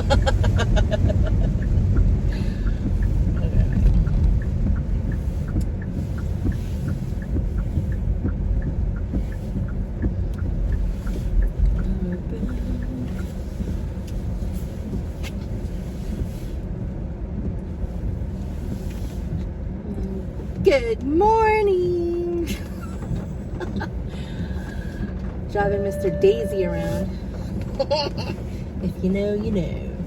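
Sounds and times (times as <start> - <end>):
light regular ticking: 0.0 - 21.4
road and engine rumble: 0.0 - 30.0.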